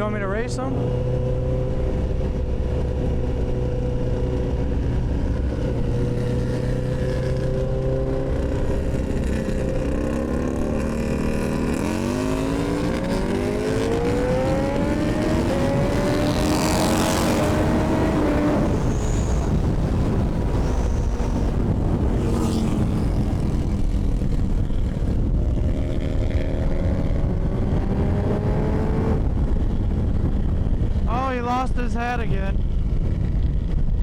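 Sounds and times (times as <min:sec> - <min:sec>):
vehicle engine accelerating: 0:00.0 - 0:31.1
wind noise rushing: 0:00.0 - 0:34.0.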